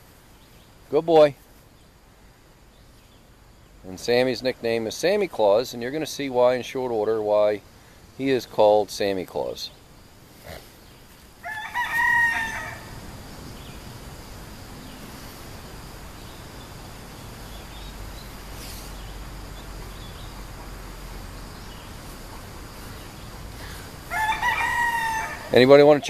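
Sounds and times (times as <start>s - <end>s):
faint outdoor background: 0.0s - 26.0s
rooster crowing: 11.4s - 13.1s, 23.6s - 25.8s.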